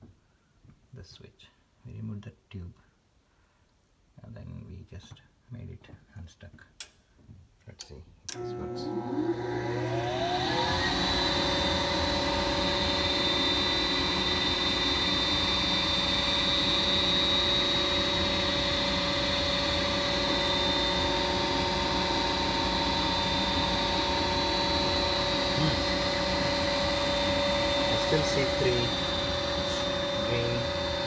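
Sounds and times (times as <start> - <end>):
furnace inducer motor whining: 8.3 - 31.0.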